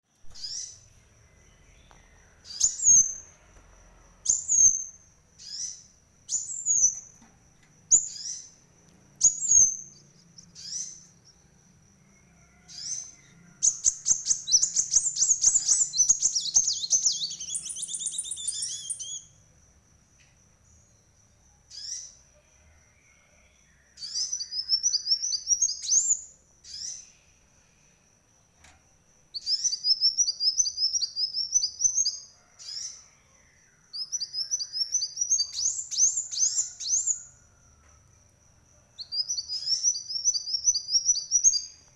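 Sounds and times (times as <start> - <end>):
faint steady high tone: 0.2 - 19.4
sunbird singing: 0.3 - 19.4, 20.6 - 27.3, 29.3 - 37.5, 39.0 - 41.9.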